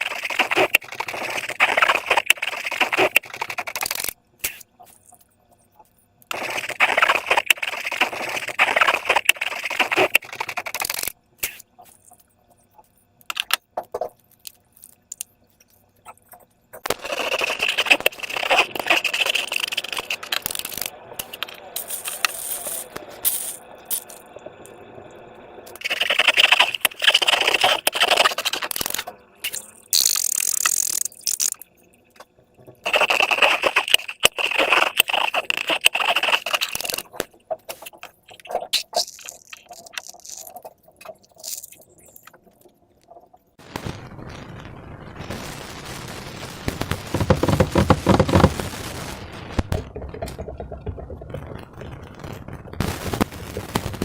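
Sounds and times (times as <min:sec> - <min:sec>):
slime crackling and clicking: 0:32.9 - 0:42.4.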